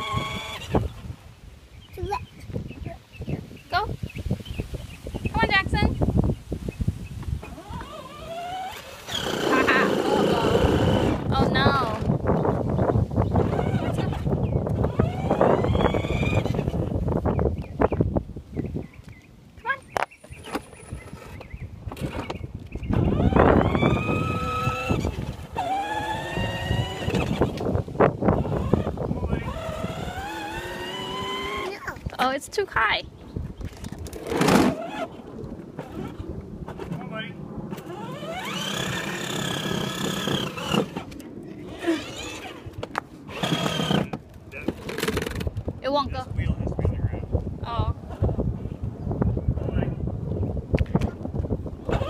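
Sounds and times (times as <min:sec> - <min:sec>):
toy car electric motor whining: 0:00.0 - 0:00.9, 0:07.4 - 0:12.0, 0:13.3 - 0:17.0, 0:20.4 - 0:27.7, 0:28.3 - 0:31.8, 0:37.7 - 0:42.7, 0:43.3 - 0:45.5
rough rumble: 0:07.3 - 0:17.5.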